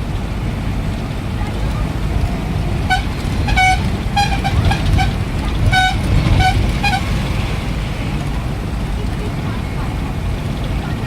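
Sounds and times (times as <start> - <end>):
low rumble of road traffic: 0.0 - 11.0
vehicle horns honking: 2.6 - 8.2.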